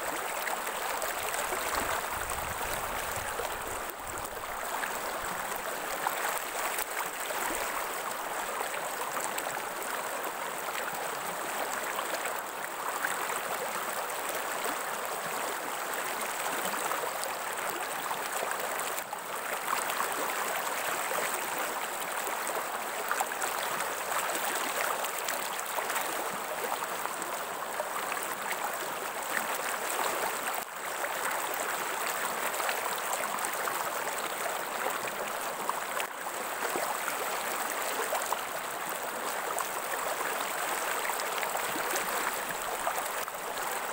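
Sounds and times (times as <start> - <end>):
stream water rushing and burbling: 0.0 - 43.9.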